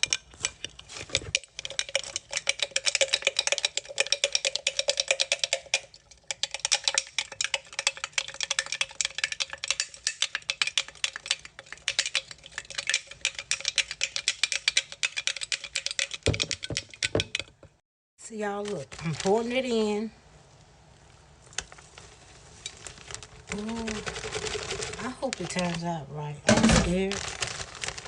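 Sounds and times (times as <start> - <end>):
spoon clinking in a bowl: 0.0 - 17.5.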